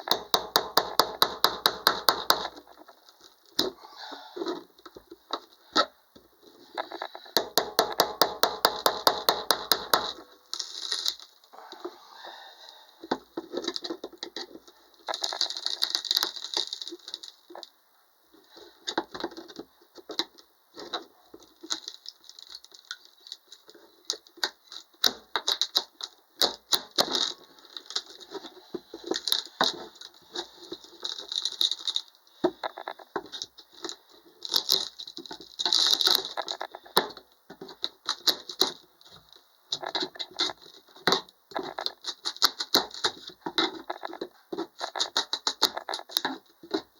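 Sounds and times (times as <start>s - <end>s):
wood knocking and rattling: 7.4s - 10.3s.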